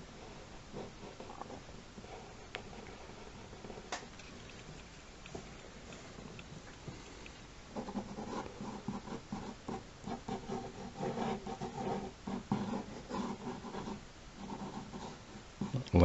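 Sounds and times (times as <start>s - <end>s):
pencil scratching on paper: 7.7s - 15.8s.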